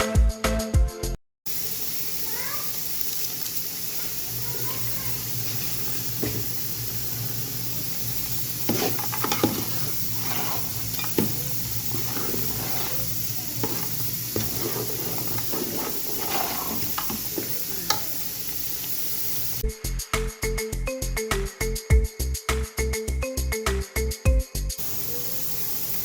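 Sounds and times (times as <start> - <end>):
music: 0.0 - 1.2, 19.6 - 25.6
food sizzling in a pan: 1.5 - 19.6, 24.8 - 26.0
spoon scraping a pan: 3.2 - 18.8.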